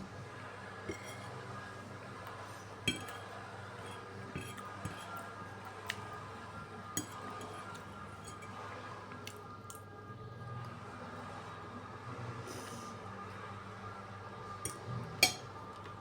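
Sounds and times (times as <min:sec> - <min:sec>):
cutlery clinking against dishes: 0:00.9 - 0:01.4, 0:02.8 - 0:06.0, 0:07.0 - 0:08.6, 0:14.7 - 0:15.9.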